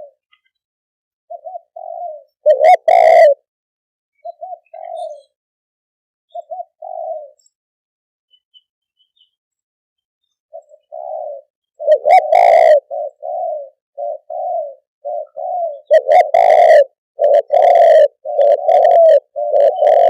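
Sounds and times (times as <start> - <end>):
dove cooing: 0.0 - 0.4, 1.3 - 3.5, 4.2 - 5.4, 6.3 - 7.6, 10.5 - 20.0.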